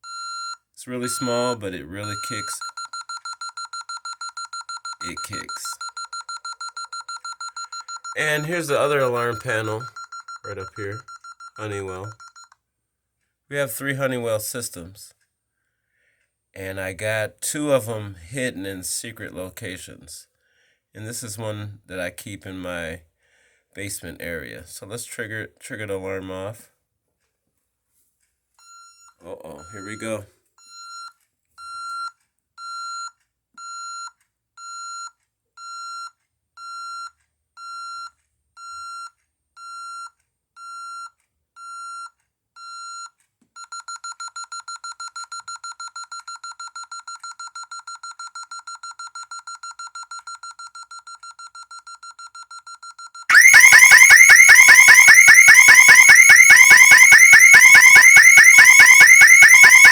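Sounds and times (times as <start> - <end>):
high electronic alarm beeps: 8.1 - 9.9, 53.3 - 59.9
sweeping alarm siren: 53.3 - 59.9.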